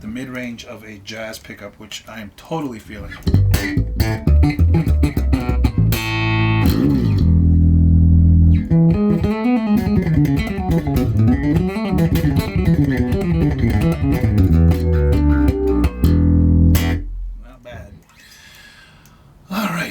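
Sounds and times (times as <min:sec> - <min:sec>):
bass guitar plucked notes: 0:03.1 - 0:17.6.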